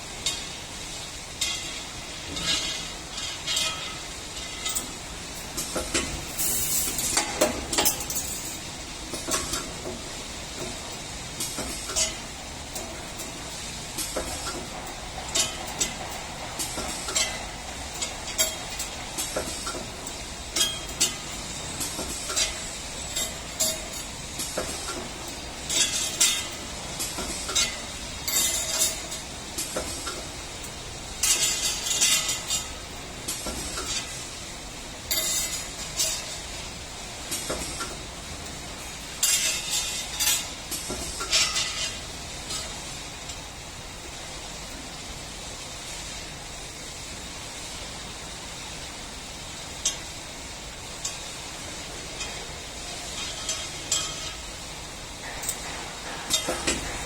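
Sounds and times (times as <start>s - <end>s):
machine mechanical hum: 0.0s - 57.0s
metallic clicks and clinks: 6.4s - 8.7s.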